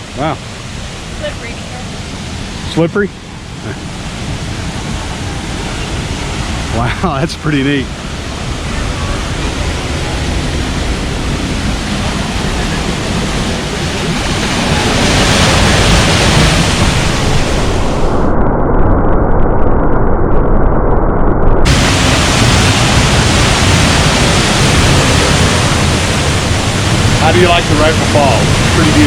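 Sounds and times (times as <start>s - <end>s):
waterfall rushing: 0.0s - 18.3s, 21.7s - 29.0s.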